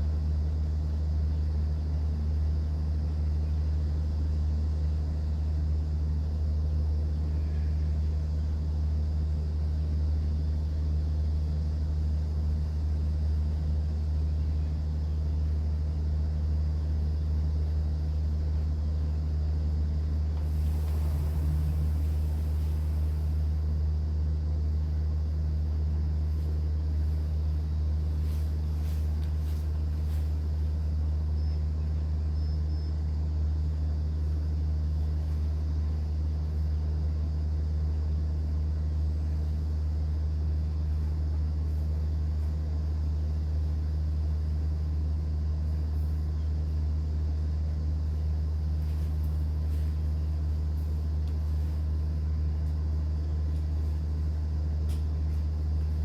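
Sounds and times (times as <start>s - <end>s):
boat engine humming: 19.8s - 32.4s.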